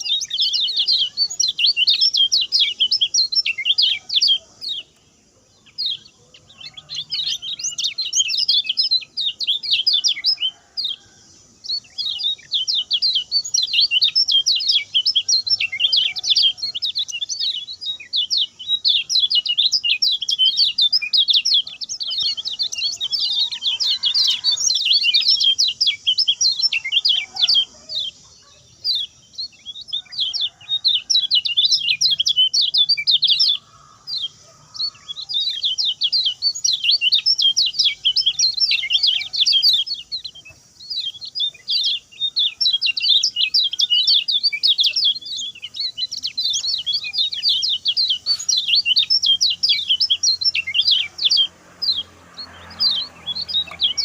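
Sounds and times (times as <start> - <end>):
bird singing rapid high chirps: 0.0 - 54.0.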